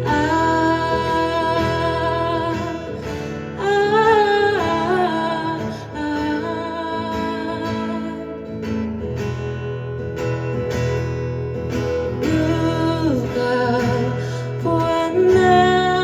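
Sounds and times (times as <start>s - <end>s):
person singing: 0.0s - 8.4s, 12.2s - 16.0s
strummed acoustic guitar: 0.0s - 16.0s.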